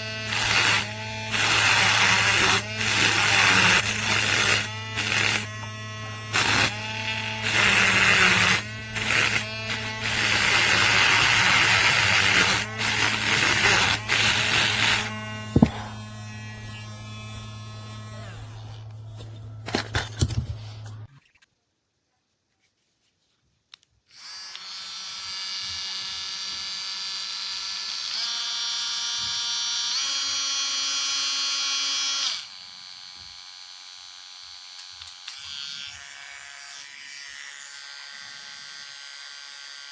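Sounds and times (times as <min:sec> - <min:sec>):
rotary tool motor whine: 0:00.2 - 0:19.6
rotary tool bit grinding: 0:00.3 - 0:16.9.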